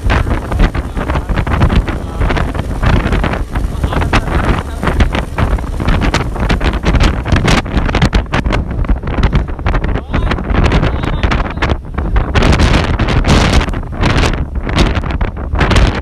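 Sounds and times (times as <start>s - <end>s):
wind buffeting microphone: 0.0s - 16.0s.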